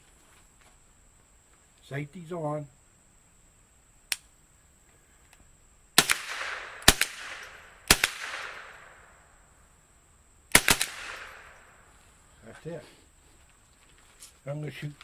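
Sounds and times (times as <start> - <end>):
rifle shots echoing: 6.0 - 9.3, 10.5 - 11.9.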